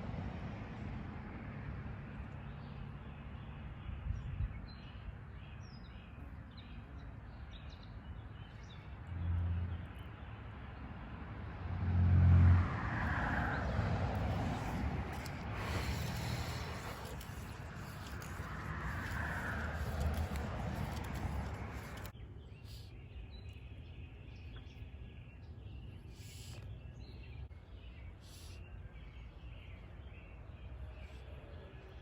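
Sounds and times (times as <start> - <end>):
rough hiss: 14.4 - 22.1.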